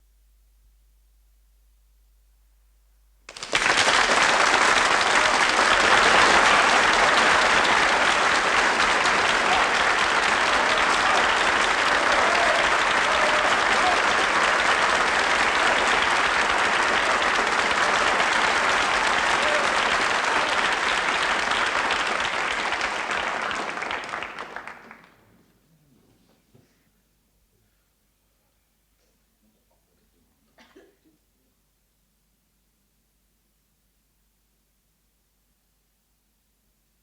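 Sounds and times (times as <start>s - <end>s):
audience applauding: 3.3s - 25.2s.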